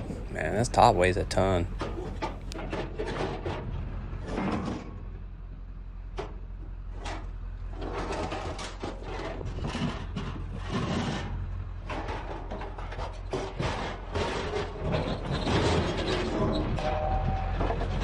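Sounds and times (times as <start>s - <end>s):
steady low hum: 0.0s - 2.6s
metal clunks and knocks: 0.0s - 3.6s
scrap metal scraping: 0.0s - 4.9s, 7.0s - 18.0s.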